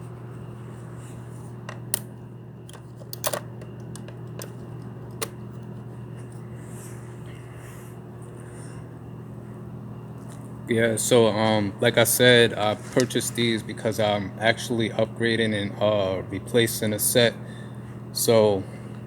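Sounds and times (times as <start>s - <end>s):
steady low hum: 0.0s - 19.0s
hand tools clicking and tapping: 2.7s - 5.6s.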